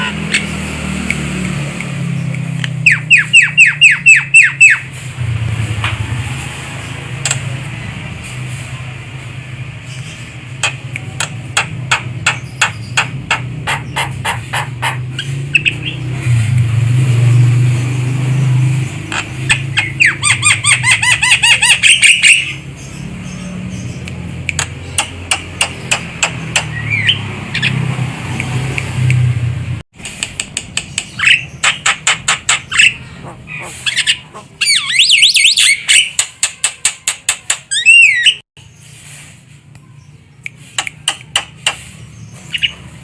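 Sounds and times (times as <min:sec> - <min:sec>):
bird calling sharp clicks: 0:00.0 - 0:04.8, 0:07.2 - 0:07.5, 0:10.6 - 0:16.0, 0:23.8 - 0:29.2, 0:30.0 - 0:32.9, 0:33.6 - 0:38.4, 0:39.7 - 0:42.8
bird squealing notes: 0:32.5 - 0:36.2, 0:37.7 - 0:38.4.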